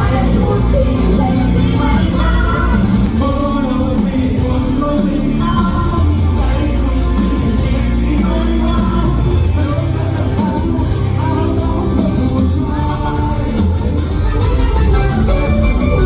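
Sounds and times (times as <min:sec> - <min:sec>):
heavy bass line: 0:00.0 - 0:16.0
live pop music with singing: 0:00.0 - 0:16.0.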